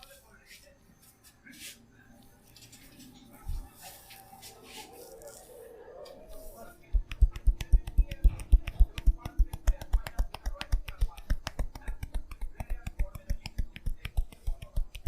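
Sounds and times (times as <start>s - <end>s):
hands slapping head and shoulders: 7.0s - 15.0s.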